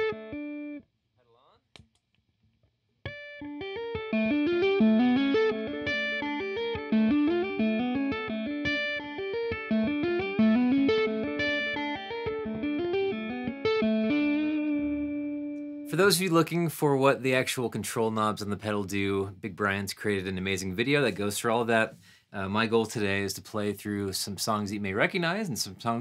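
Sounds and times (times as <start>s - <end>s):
clean electric guitar arpeggio: 0.0s - 0.8s, 3.1s - 15.9s.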